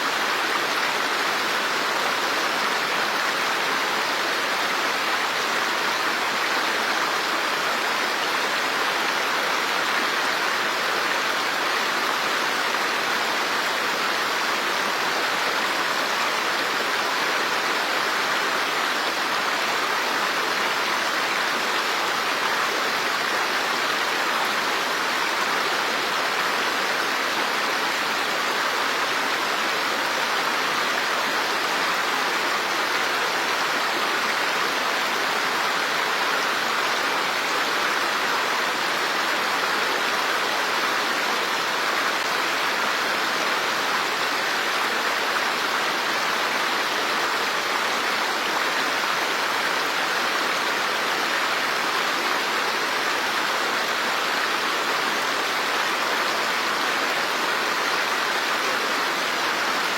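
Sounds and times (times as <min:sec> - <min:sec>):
rushing water: 0:00.0 - 0:59.9.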